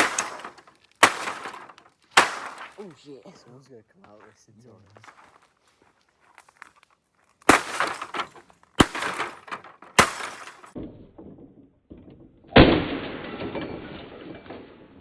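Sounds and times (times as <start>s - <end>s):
glass breaking: 0.0s - 2.8s, 7.5s - 10.8s, 12.6s - 15.0s
heavy crash rattling: 0.0s - 2.8s, 7.5s - 10.8s, 12.5s - 15.0s
debris scattering: 0.0s - 3.0s, 6.2s - 15.0s.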